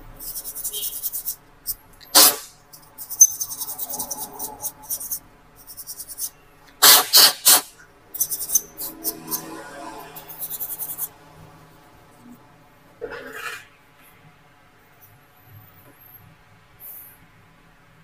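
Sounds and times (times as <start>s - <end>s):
brush scratching inside laptop: 0.2s - 7.6s, 8.2s - 11.2s
loud puffs of air: 2.1s - 2.6s, 6.8s - 7.8s.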